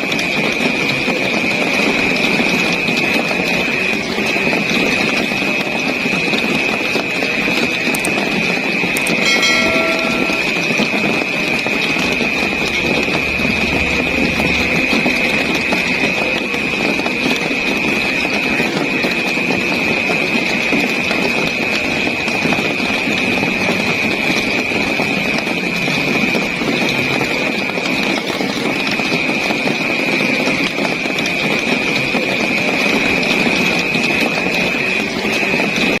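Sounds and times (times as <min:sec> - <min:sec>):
steady rain falling: 0:09.8 - 0:36.0.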